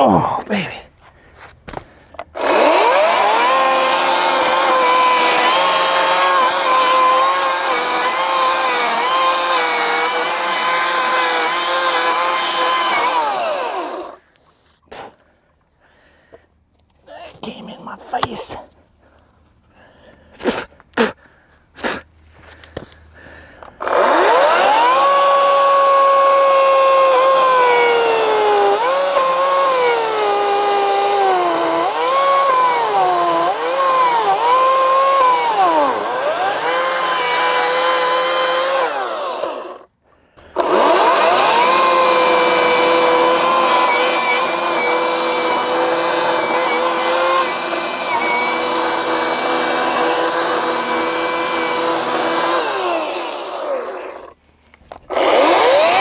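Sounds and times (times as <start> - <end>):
battery chainsaw motor whine: 2.4 - 14.2, 23.8 - 39.9, 40.6 - 54.4, 55.0 - 56.0.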